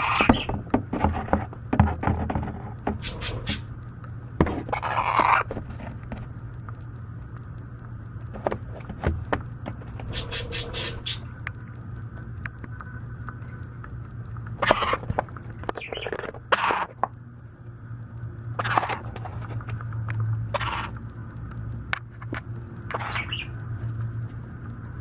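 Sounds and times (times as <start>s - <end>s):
baby parrot hunger calls: 0.0s - 0.6s, 3.0s - 3.7s, 4.7s - 5.5s, 10.1s - 11.3s, 14.6s - 15.0s, 18.6s - 19.0s, 20.5s - 21.0s, 22.9s - 23.6s.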